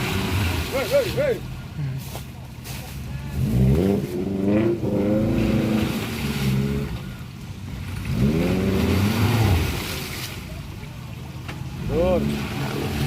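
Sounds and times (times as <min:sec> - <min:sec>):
car engine revving under load: 0:03.2 - 0:10.2.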